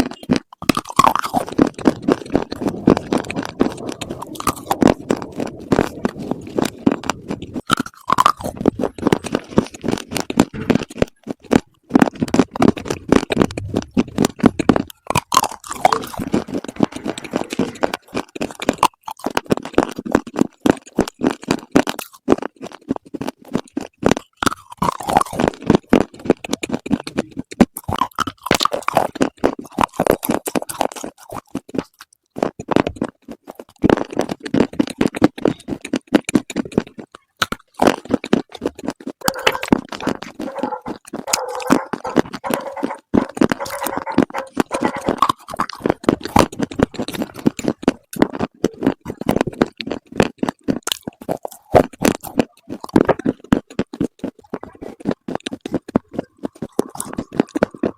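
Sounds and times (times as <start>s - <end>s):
crisp chewing and crunching: 0.0s - 57.9s
squeaky mouth noises: 0.0s - 57.9s.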